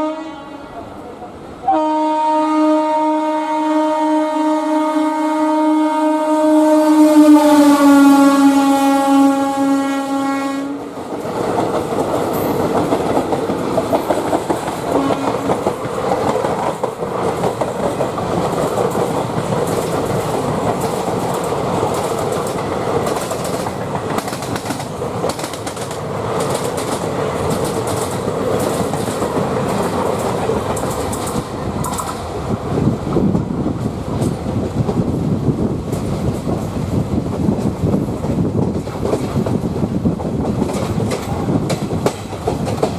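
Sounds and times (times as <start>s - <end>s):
locomotive horn: 0.0s - 0.9s, 1.6s - 10.9s, 14.9s - 15.6s
train wheels clattering: 10.8s - 42.9s.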